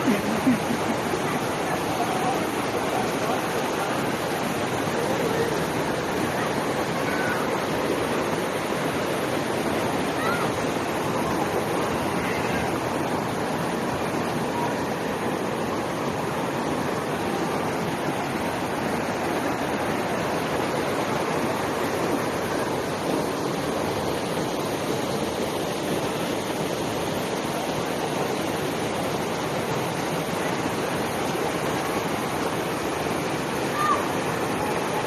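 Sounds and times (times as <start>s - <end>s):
waterfall roaring: 0.0s - 35.0s.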